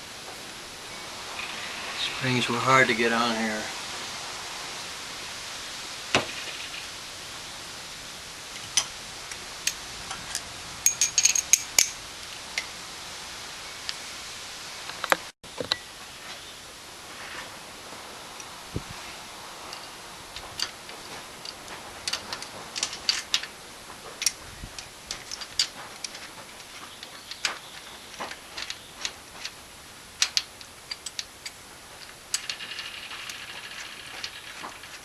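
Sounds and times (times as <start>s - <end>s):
metal tools clicking and clinking: 9.7s - 12.0s, 20.6s - 23.5s, 30.2s - 35.0s.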